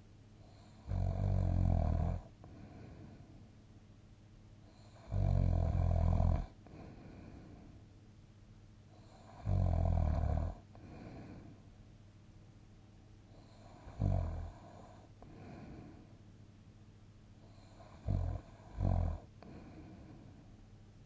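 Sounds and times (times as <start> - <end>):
quiet breathing: 0.0 - 3.6, 4.6 - 7.9, 8.9 - 11.8, 13.2 - 16.3, 17.4 - 20.8
person snoring: 0.6 - 3.2, 4.8 - 7.6, 9.0 - 11.6, 13.4 - 16.1, 17.5 - 20.4.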